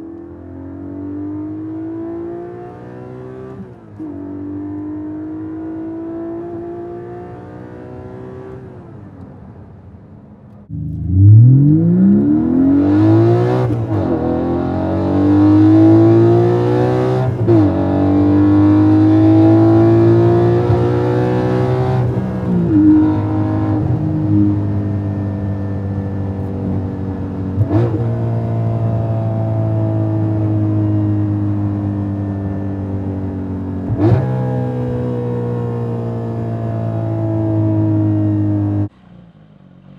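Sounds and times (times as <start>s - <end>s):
car engine accelerating hard: 10.6s - 39.9s.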